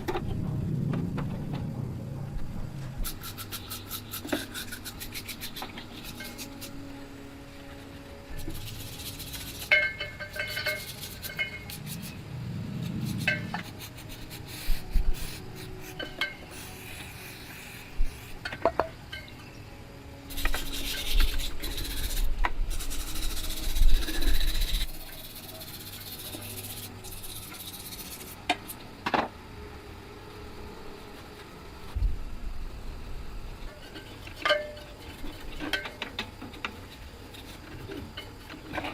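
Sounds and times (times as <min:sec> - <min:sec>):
scraping metal parts: 0:03.0 - 0:12.2.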